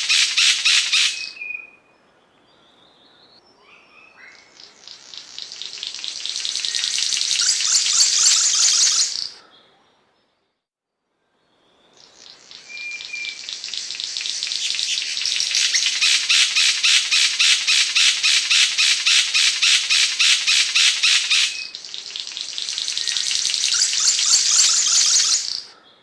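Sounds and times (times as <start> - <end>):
bird singing harsh rattling buzz: 4.9 - 9.3, 12.0 - 25.6.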